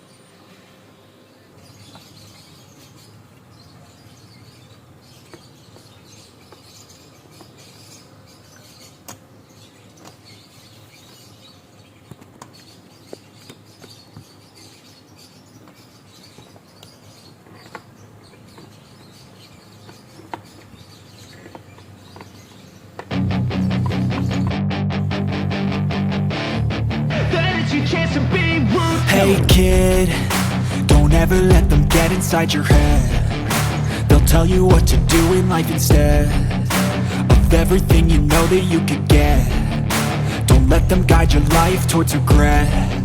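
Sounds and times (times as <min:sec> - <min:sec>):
loud music with strummed guitar: 0:23.1 - 0:43.0.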